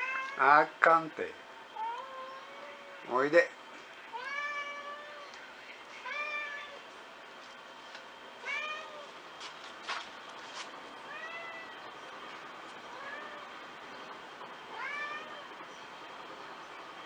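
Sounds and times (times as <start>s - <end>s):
cat meowing: 0.0s - 0.4s, 4.1s - 5.3s, 8.4s - 9.1s, 11.1s - 11.8s, 12.9s - 13.5s, 14.7s - 15.5s.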